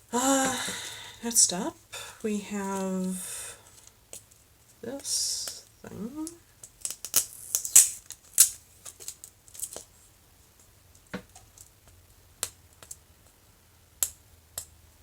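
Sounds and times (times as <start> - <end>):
plastic packaging crinkling: 6.2 - 9.9.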